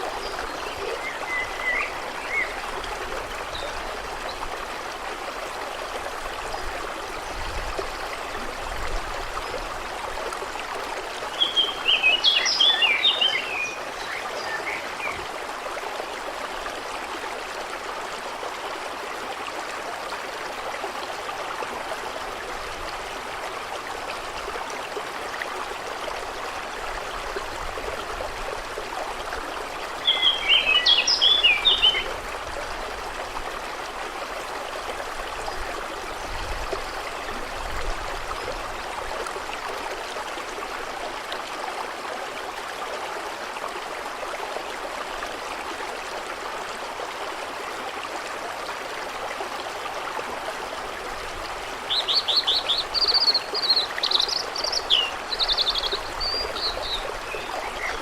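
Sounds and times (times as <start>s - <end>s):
stream flowing: 0.0s - 58.0s
bird chirping: 30.1s - 32.0s, 51.9s - 58.0s.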